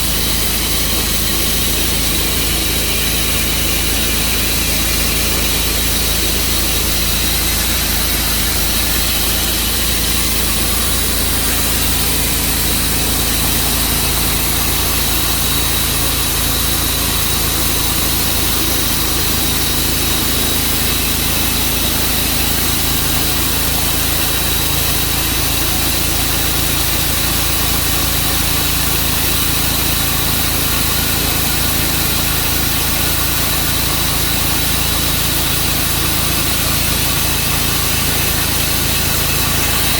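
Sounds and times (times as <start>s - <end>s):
sawmill sawing through log: 0.0s - 39.9s.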